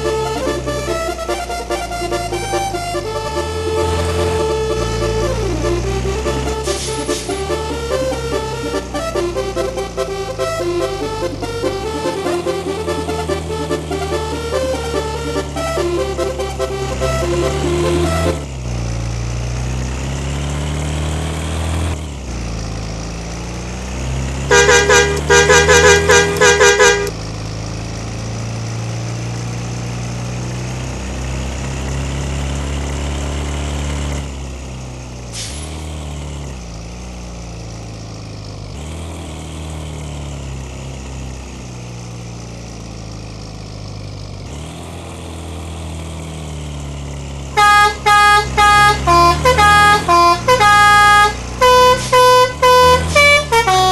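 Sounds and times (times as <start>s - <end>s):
multi-tone bus horn: 0.0s - 18.5s, 24.4s - 27.2s, 47.5s - 53.9s
bus engine pulling through gears: 0.0s - 53.9s.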